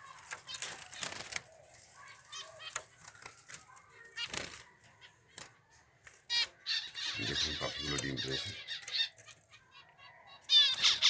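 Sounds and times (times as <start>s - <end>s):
finches chirping: 6.3s - 11.0s.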